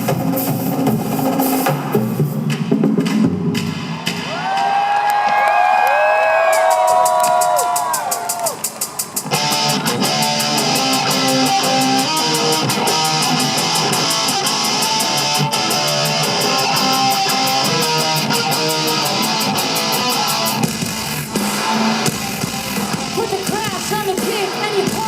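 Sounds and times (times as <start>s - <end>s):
live band playing loud music: 0.0s - 25.0s
strummed electric guitar: 9.2s - 25.0s.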